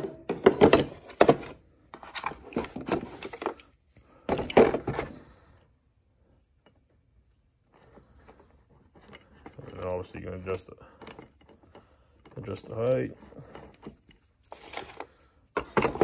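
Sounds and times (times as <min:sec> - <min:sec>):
jack and case clattering: 0:00.0 - 0:03.6, 0:14.5 - 0:16.0.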